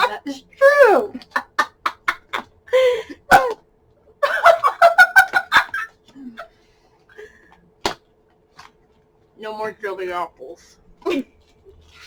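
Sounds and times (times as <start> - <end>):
woman laughing: 0.8 - 3.6, 4.2 - 6.5.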